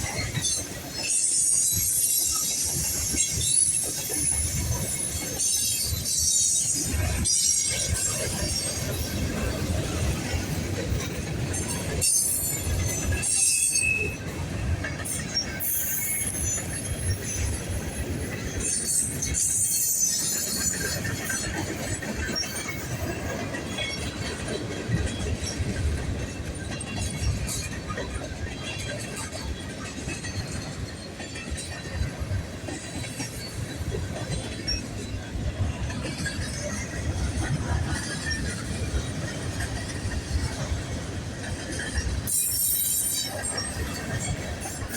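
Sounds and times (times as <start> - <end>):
high wheel squeals: 0.0 - 8.8, 15.3 - 21.2, 42.3 - 44.9
train wheels rumbling on rails: 0.0 - 44.9.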